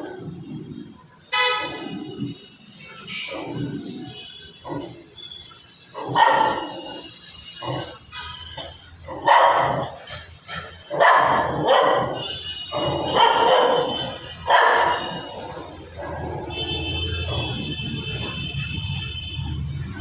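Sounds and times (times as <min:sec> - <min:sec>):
dog barking: 0:03.2 - 0:05.0, 0:06.0 - 0:08.3, 0:09.1 - 0:17.6.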